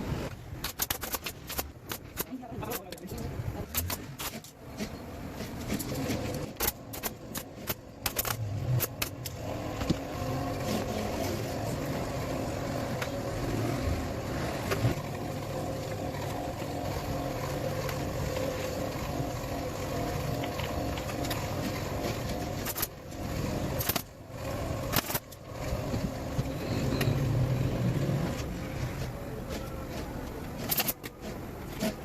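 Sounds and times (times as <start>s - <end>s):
mechanical hum with faint whine: 0.0s - 32.0s.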